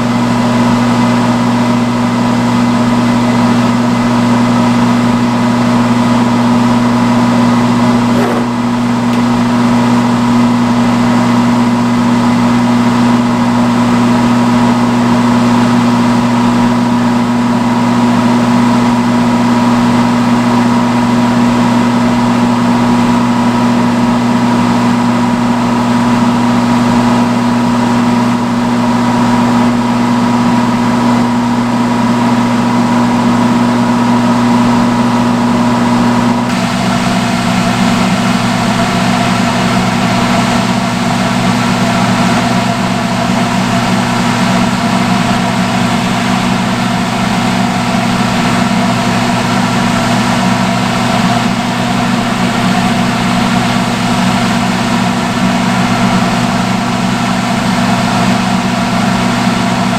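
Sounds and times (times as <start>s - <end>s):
hair dryer motor hum: 7.7s - 11.1s, 36.4s - 59.9s.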